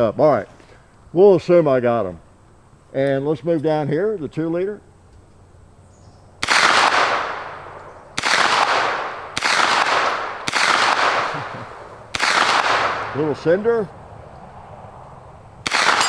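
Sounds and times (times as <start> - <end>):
carbine gunshots echoing: 6.4 - 13.9, 15.6 - 16.0.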